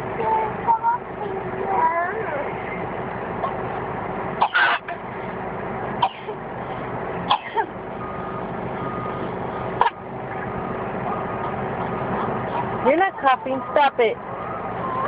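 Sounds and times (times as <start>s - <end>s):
steady background hum: 0.0s - 15.0s
small child coughing: 6.0s - 6.4s, 7.3s - 7.7s.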